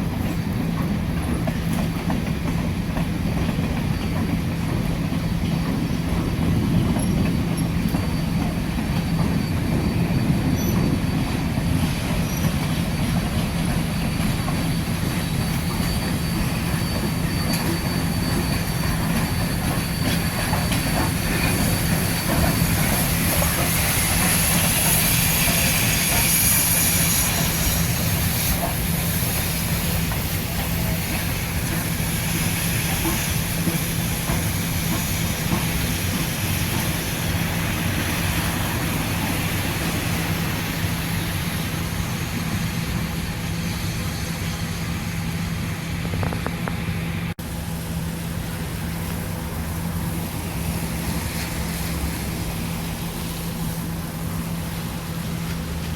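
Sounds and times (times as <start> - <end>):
train rumbling on track: 0.0 - 55.9
high-pitched wheel squeal: 6.9 - 36.2.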